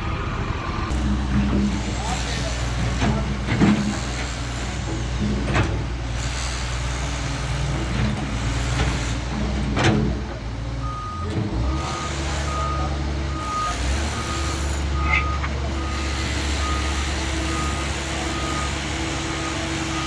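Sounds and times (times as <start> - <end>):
excavator diesel engine running: 0.0 - 20.0
reversing alarm beeping: 10.8 - 20.0.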